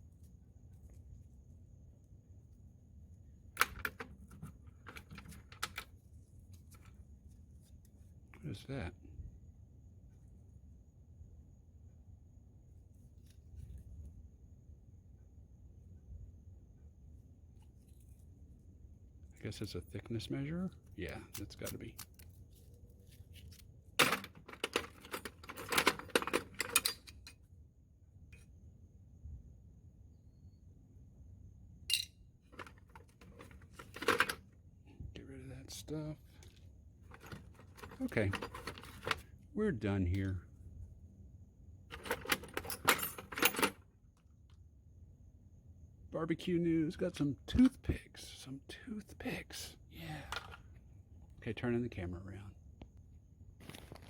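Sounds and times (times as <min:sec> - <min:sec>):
small objects clattering in toolbox: 0:24.0 - 0:27.1, 0:37.1 - 0:39.2.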